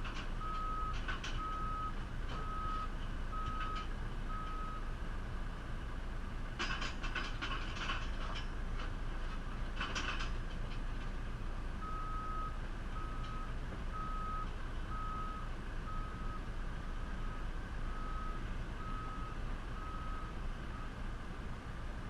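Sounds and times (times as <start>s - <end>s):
diesel engine running: 0.0s - 22.0s
reversing alarm beeping: 0.4s - 4.8s, 11.8s - 20.9s.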